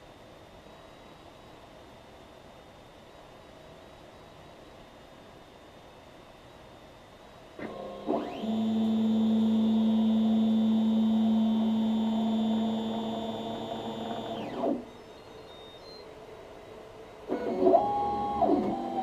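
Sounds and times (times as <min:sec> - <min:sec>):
printer stepper motors whining: 0:07.6 - 0:19.0.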